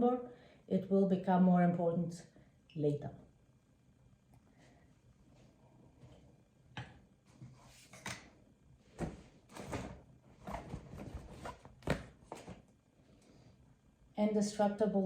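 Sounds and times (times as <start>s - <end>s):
packaging rustling and knocking: 9.0s - 12.6s.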